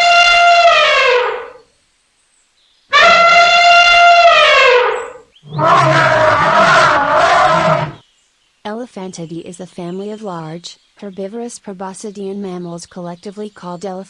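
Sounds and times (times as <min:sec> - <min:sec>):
dog howling: 0:03.0 - 0:08.0.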